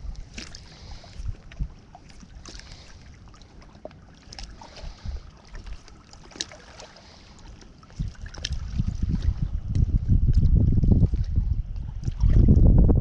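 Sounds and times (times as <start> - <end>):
wind buffeting microphone: 0.0 - 3.0, 4.4 - 6.0, 7.8 - 13.0.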